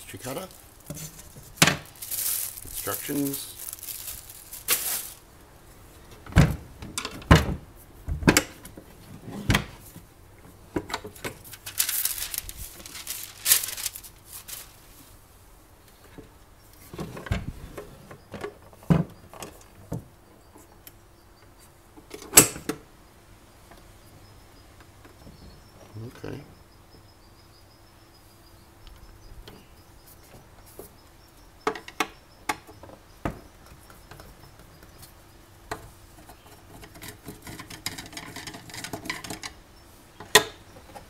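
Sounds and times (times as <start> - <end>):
packaging rustling: 0.1 - 5.3, 11.3 - 14.9
appliance parts knocking and thudding: 0.8 - 2.9, 6.2 - 8.7.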